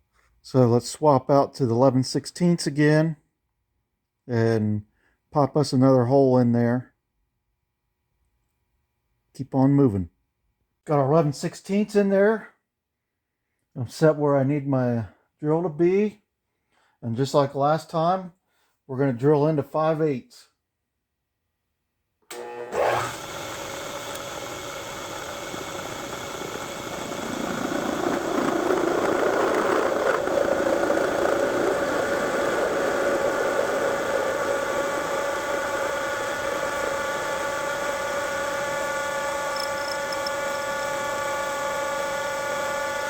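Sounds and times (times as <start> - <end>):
milling machine drilling steel: 22.4 - 43.0.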